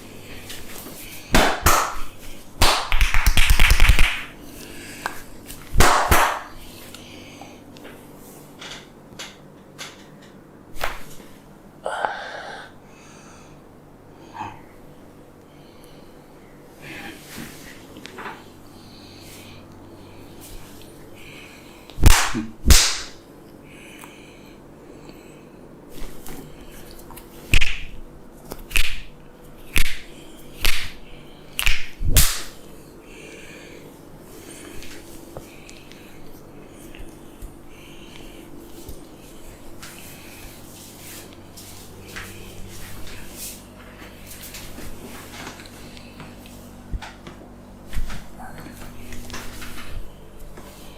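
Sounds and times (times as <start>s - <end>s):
loud sharp hand slaps: 1.3s - 4.3s, 5.0s - 6.6s, 10.8s - 11.0s, 22.0s - 23.2s, 27.5s - 27.9s, 28.7s - 29.1s, 29.8s - 31.0s, 31.6s - 32.6s.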